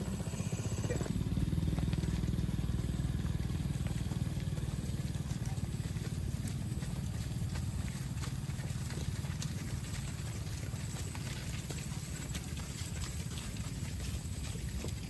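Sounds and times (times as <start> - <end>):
small engine running: 0.0 - 15.0.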